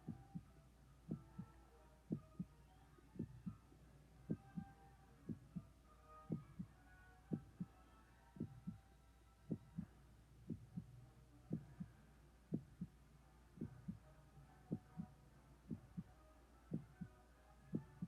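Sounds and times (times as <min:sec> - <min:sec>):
faint low hum: 0:00.0 - 0:18.0
heartbeat double thumps: 0:00.1 - 0:00.5, 0:01.1 - 0:02.5, 0:03.2 - 0:03.6, 0:04.3 - 0:04.7, 0:05.3 - 0:05.7, 0:06.3 - 0:07.7, 0:08.4 - 0:08.8, 0:09.5 - 0:11.9, 0:12.5 - 0:13.0, 0:13.6 - 0:14.0, 0:14.7 - 0:15.1, 0:15.7 - 0:16.1, 0:16.7 - 0:17.1, 0:17.7 - 0:18.0.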